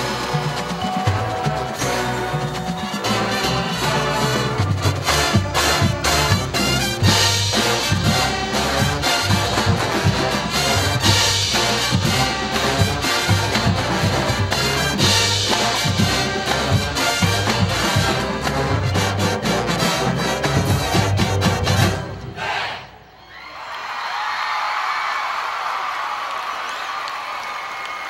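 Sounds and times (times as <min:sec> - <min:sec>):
marching drums: 0:00.0 - 0:22.2
marching band brass: 0:00.0 - 0:23.0.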